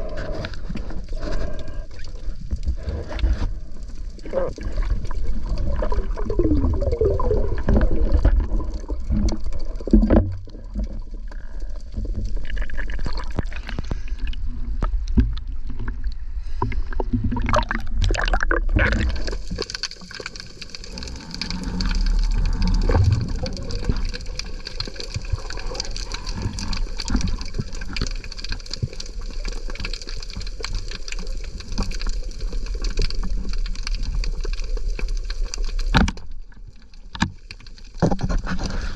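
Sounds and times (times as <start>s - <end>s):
sea water sloshing and gurgling: 0.0s - 38.9s
deep rumble: 2.7s - 19.7s, 20.5s - 27.8s.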